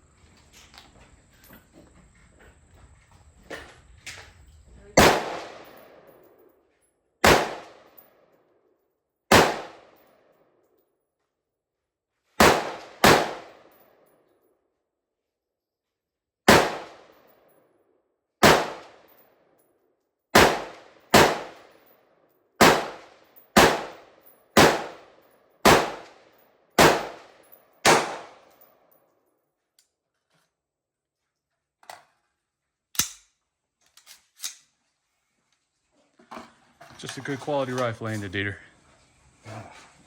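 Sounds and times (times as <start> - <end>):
rifle shots with ringing echo: 5.0 - 6.4, 7.2 - 8.1, 9.3 - 10.2, 12.4 - 14.0, 16.5 - 17.3, 18.4 - 19.2, 20.3 - 21.8, 22.6 - 28.6.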